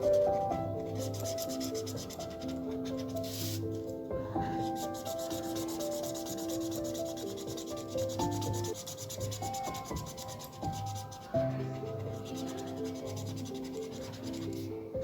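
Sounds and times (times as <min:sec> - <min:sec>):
felt-tip pen scratching on paper: 0:00.0 - 0:03.8, 0:04.4 - 0:14.8
soft background music: 0:00.0 - 0:15.0.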